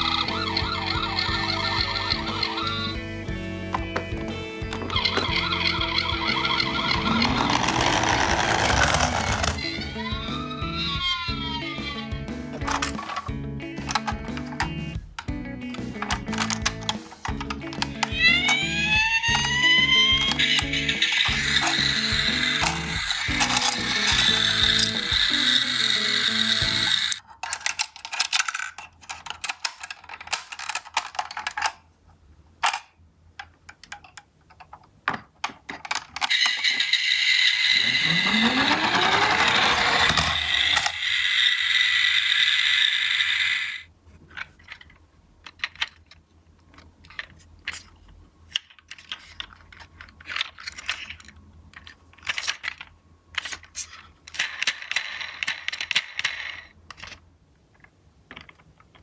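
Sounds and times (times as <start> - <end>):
toy electronic siren: 0.0 - 3.0, 4.9 - 12.1, 18.1 - 27.2, 36.3 - 43.8
toy cars clicking and clattering: 4.8 - 10.0, 12.6 - 14.8, 15.8 - 31.8, 32.6 - 59.0.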